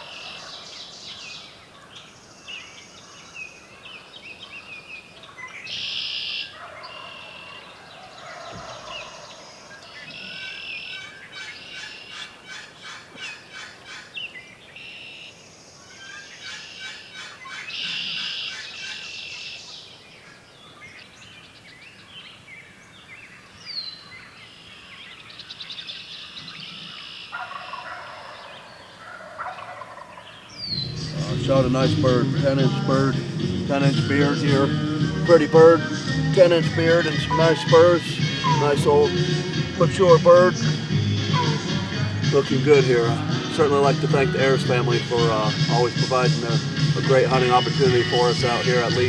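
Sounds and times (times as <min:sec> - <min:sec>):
birds singing: 0:00.0 - 0:49.0
turkey gobbling: 0:05.7 - 0:14.2, 0:16.0 - 0:19.6, 0:26.2 - 0:49.0.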